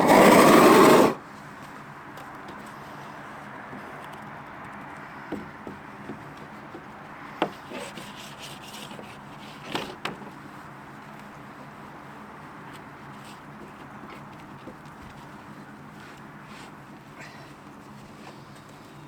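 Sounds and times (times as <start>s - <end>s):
steady rushing noise: 0.0s - 1.2s
wooden knocks and taps: 5.3s - 7.8s.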